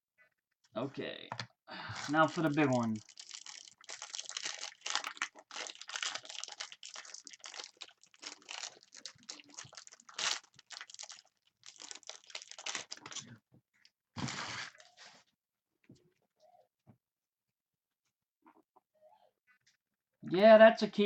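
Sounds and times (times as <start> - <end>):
wrapper crinkling and tearing: 2.0 - 13.3.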